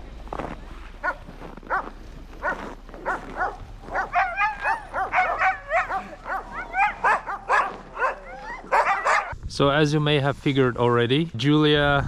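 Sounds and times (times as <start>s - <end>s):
huskies barking and yipping: 0.9s - 9.4s.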